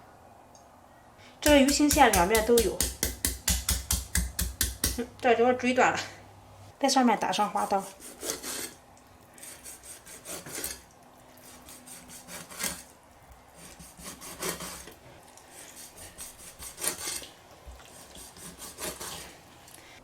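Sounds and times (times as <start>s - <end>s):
knife scraping cuts through fish: 7.6s - 8.8s, 9.4s - 10.8s, 11.4s - 12.9s, 13.6s - 15.0s, 15.6s - 19.4s.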